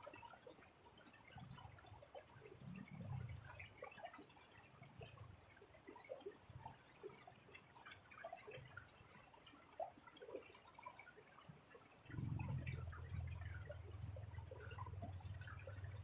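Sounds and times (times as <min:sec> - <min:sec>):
trickling water: 0:00.0 - 0:16.0
water drips and plinks: 0:00.0 - 0:16.0.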